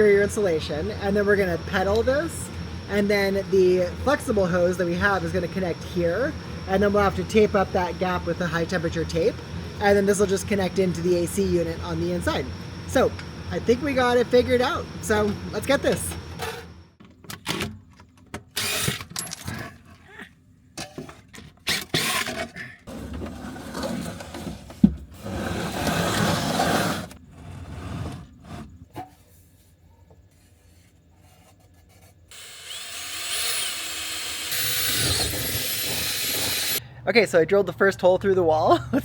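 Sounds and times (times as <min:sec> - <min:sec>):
power drill drilling: 0:18.6 - 0:19.0, 0:32.3 - 0:36.8.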